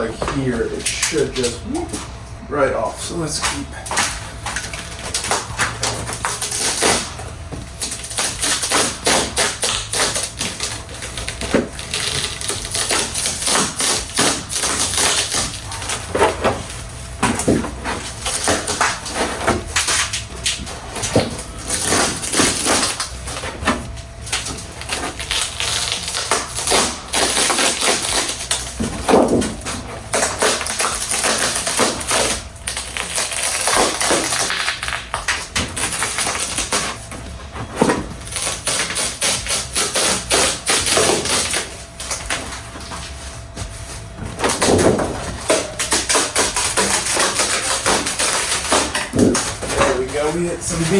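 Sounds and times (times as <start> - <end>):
fiberglass cracking as peeled: 7.8 - 16.9, 24.2 - 28.8, 29.4 - 37.0.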